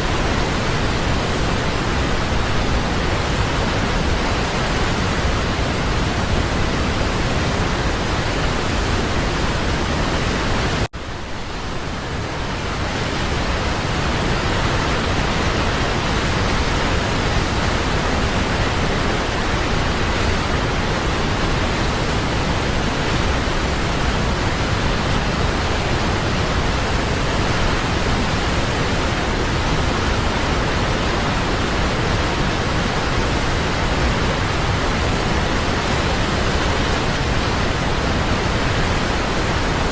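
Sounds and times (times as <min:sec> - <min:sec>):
waterfall roaring: 0:00.0 - 0:39.9.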